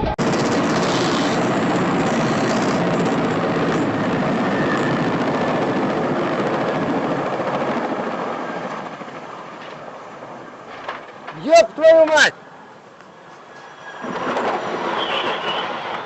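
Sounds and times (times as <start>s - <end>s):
helicopter rotor and engine: 0.2s - 12.8s.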